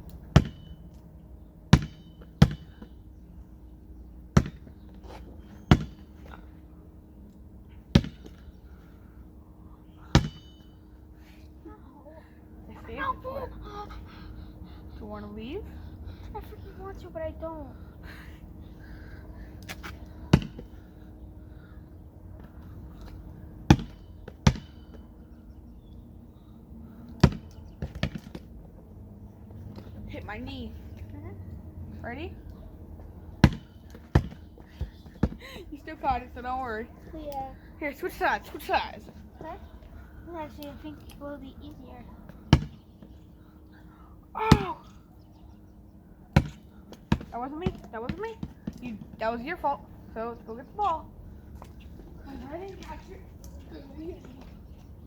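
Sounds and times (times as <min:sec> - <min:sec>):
basketball bouncing: 0:00.3 - 0:00.7, 0:01.7 - 0:02.8, 0:04.3 - 0:04.8, 0:05.7 - 0:06.1, 0:07.9 - 0:08.4, 0:10.1 - 0:10.6, 0:20.3 - 0:20.7, 0:23.7 - 0:24.9, 0:27.2 - 0:28.4, 0:33.4 - 0:35.4, 0:42.5 - 0:42.8, 0:46.4 - 0:49.1.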